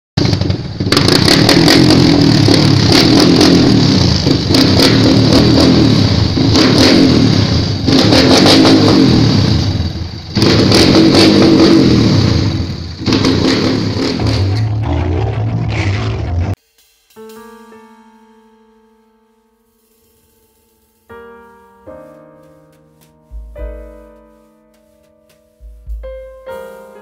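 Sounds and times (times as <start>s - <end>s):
motorcycle engine revving: 0.2s - 16.6s.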